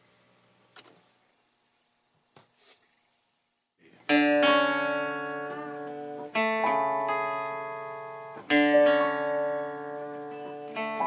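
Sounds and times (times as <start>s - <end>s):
acoustic guitar chords strummed: 3.8s - 11.0s.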